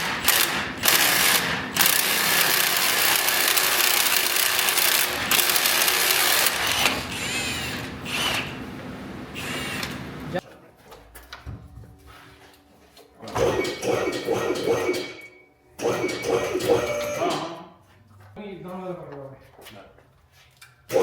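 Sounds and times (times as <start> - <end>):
power tool loosening bolts: 0.0 - 8.6, 9.4 - 10.1.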